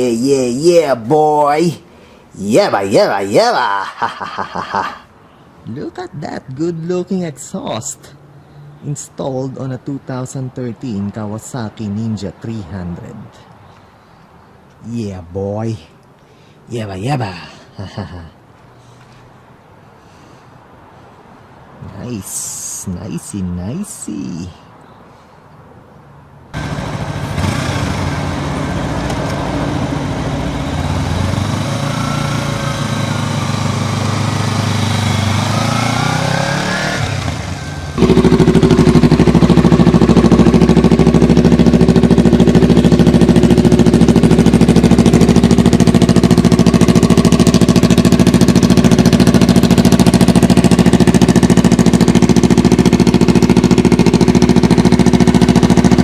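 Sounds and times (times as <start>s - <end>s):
motorcycle engine running: 26.6s - 56.0s.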